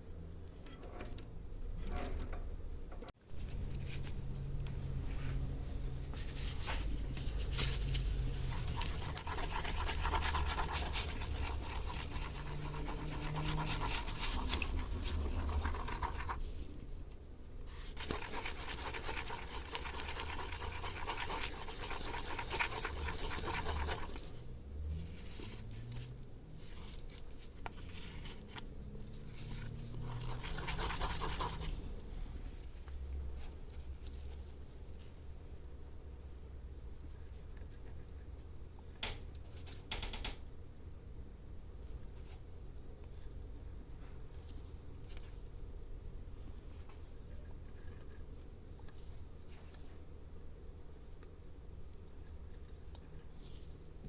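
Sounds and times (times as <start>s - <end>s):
low hum: 0.0s - 17.7s
scratching and rubbing: 3.3s - 35.1s.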